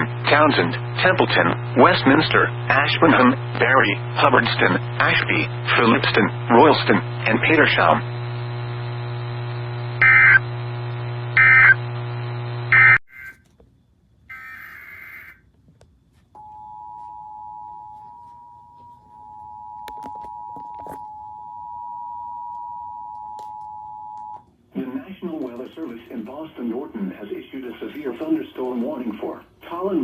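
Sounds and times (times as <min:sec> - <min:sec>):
steady low hum: 0:00.0 - 0:13.0, 0:15.4 - 0:30.0
buzzy data bursts: 0:00.3 - 0:13.3.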